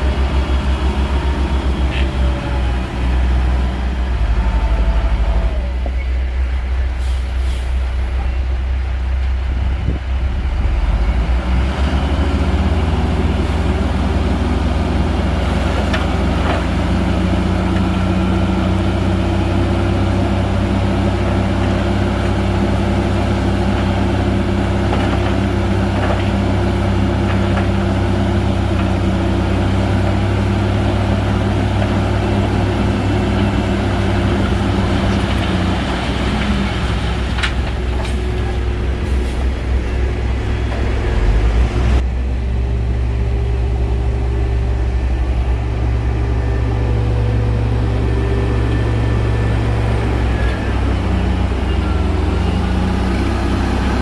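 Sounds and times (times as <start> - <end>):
higher engine note: 0.0 - 6.1, 41.0 - 54.0
bulldozer diesel engine: 0.0 - 54.0.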